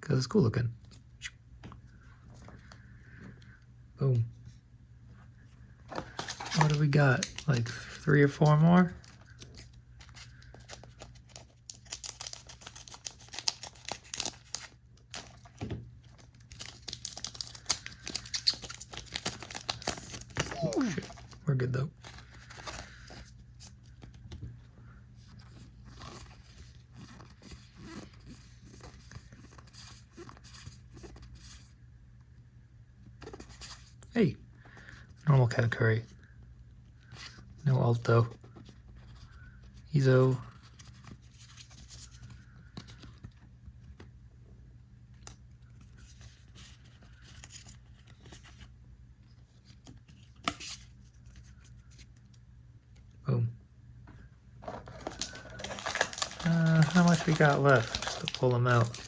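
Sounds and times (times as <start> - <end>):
cards rustling and scraping: 5.9 - 21.4, 22.0 - 31.8, 36.9 - 44.2, 45.1 - 52.4, 54.6 - 59.0.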